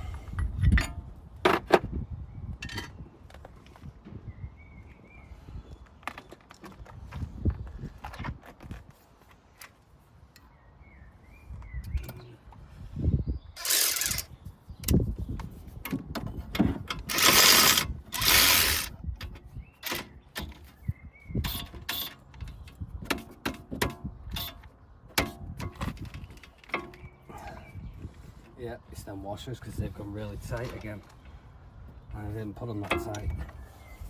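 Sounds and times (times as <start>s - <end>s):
ratchet clicks: 13.6s - 15.0s, 17.0s - 18.9s.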